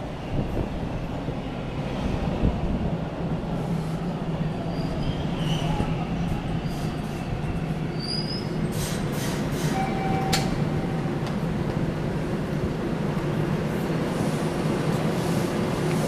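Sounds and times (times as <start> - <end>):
rail car rumbling: 0.0 - 16.0
wheel squeals: 7.9 - 8.9.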